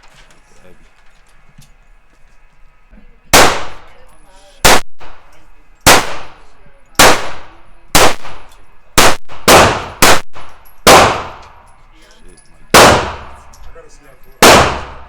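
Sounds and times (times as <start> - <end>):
gunshots echoing: 3.4 - 3.9, 4.6 - 11.7, 12.7 - 13.6, 14.4 - 15.0.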